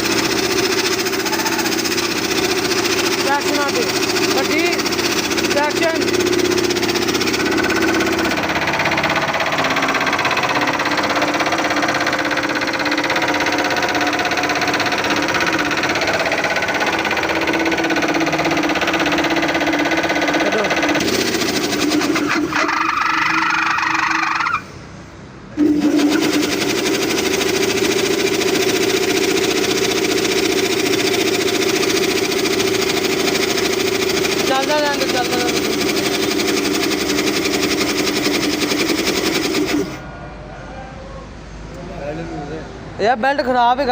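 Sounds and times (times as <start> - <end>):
fast mechanical clatter: 0.0 - 24.6, 25.6 - 40.0
air compressor running: 0.0 - 40.0
high squeal: 22.5 - 24.8.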